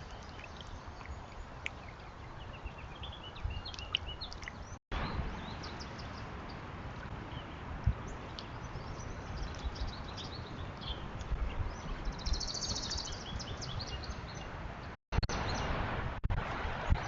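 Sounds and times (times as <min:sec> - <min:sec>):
small birds chirping and trilling: 0:00.0 - 0:06.6, 0:07.2 - 0:15.8.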